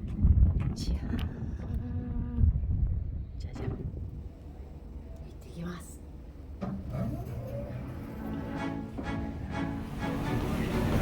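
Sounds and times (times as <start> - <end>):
instrumental background music: 7.9 - 11.0.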